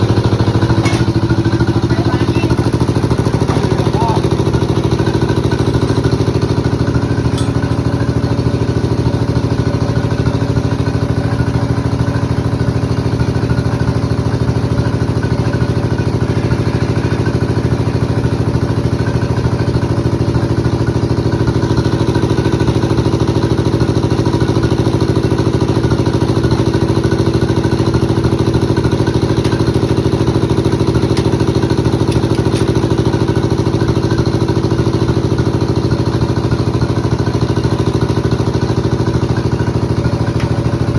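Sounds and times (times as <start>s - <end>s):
sawmill engine idling: 0.0s - 40.9s.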